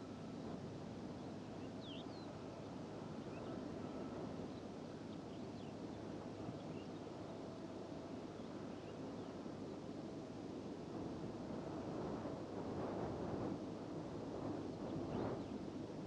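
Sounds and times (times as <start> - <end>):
distant machinery hum: 0.0 - 16.0
steady desert wind: 0.0 - 16.0
faint bird chirps: 1.2 - 7.0.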